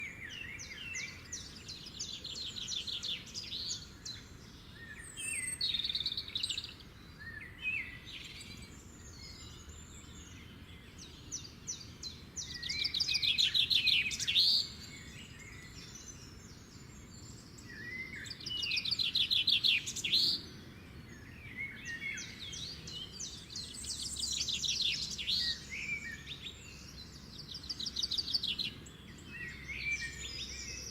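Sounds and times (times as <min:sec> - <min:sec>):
faint background hiss: 0:00.0 - 0:30.9
songbird trilling and chirping: 0:00.0 - 0:30.9.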